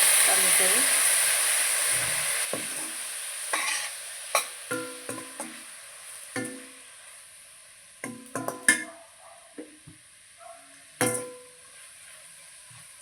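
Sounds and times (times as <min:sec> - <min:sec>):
steady sizzle: 0:00.0 - 0:13.0
utensil knocking and scraping pan: 0:02.5 - 0:02.9, 0:03.6 - 0:05.6, 0:08.1 - 0:08.9.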